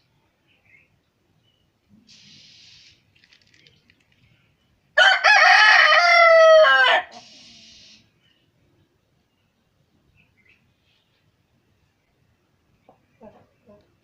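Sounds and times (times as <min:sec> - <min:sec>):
faint hissing: 0:01.8 - 0:04.5, 0:07.1 - 0:08.3
rooster crowing: 0:05.0 - 0:07.2.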